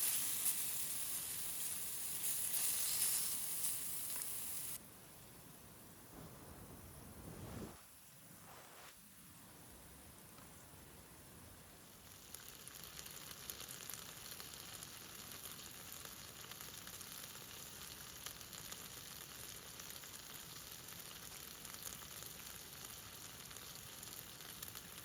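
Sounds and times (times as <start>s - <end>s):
meat sizzling in hot fat: 0.0s - 4.8s, 11.8s - 25.0s.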